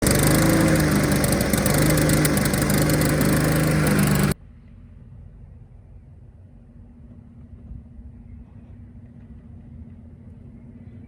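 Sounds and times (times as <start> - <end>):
lawn mower engine idling: 0.0 - 4.4.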